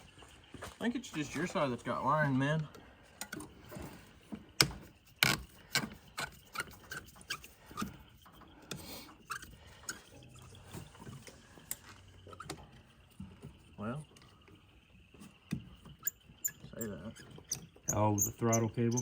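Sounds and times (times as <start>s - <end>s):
hand tools and metal parts clinking: 2.6s - 13.0s.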